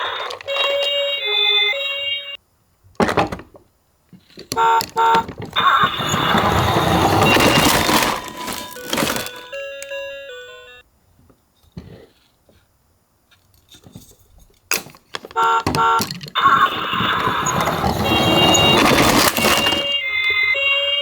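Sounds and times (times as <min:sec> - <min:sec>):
toy siren steady tone: 0:15.7 - 0:21.0.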